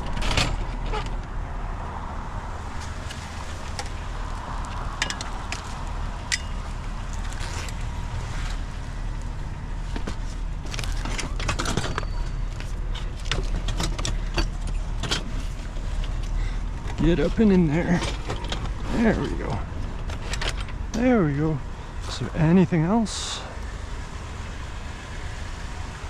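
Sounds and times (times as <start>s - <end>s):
low engine hum: 0.0s - 26.0s
metal scrap clinking and rattling: 10.7s - 16.3s.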